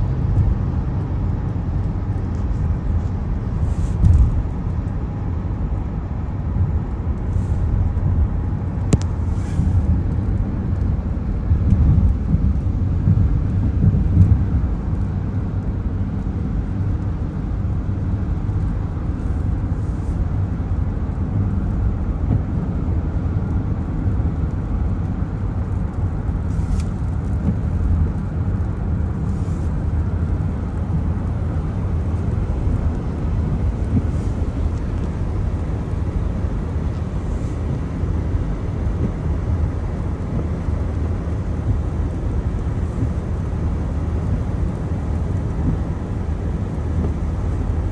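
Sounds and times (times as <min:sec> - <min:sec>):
tyre and road noise on wet road: 0:00.0 - 0:47.9.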